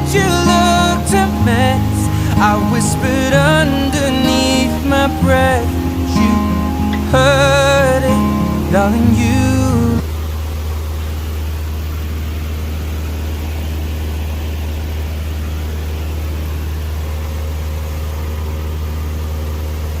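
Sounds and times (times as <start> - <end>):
song with guitar: 0.0 - 10.0
light aircraft engine droning: 0.0 - 20.0.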